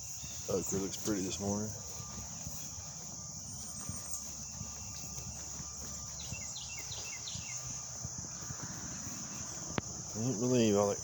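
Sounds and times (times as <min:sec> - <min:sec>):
bird chirping: 0:00.0 - 0:11.0
high-pitched insect chorus: 0:00.0 - 0:11.0.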